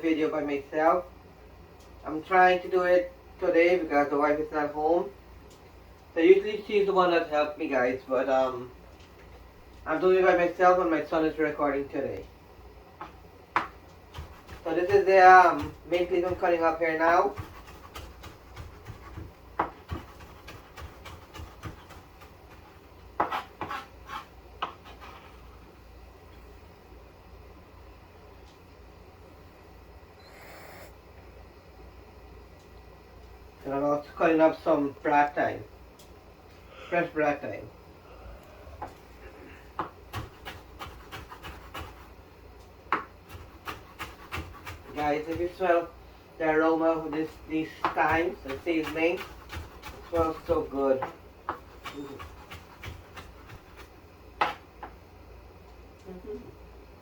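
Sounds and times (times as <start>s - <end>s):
knife chopping on cutting board: 13.0s - 25.3s, 39.8s - 42.1s, 42.9s - 45.7s, 47.1s - 55.0s.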